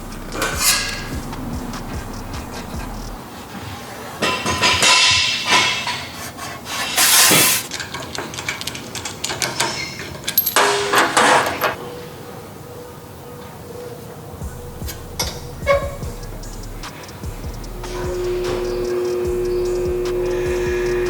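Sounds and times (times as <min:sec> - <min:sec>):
metal knocks and clanks: 0:00.0 - 0:02.8, 0:07.8 - 0:11.8, 0:14.4 - 0:16.3.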